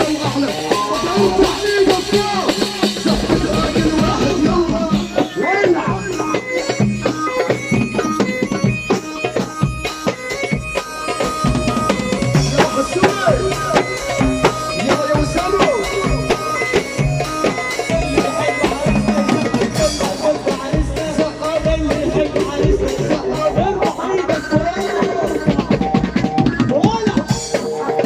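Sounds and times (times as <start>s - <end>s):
bending lead melody: 0.0s - 28.0s
steady drum beat: 0.0s - 28.0s.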